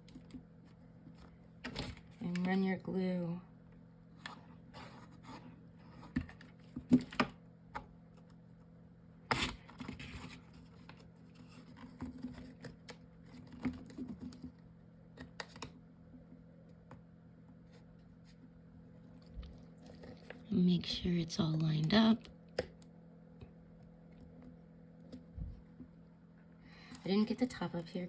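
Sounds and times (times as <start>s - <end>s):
clicks taps and scratches of pieces: 0.0s - 2.5s, 9.7s - 18.5s
faint steady hum: 0.0s - 28.0s.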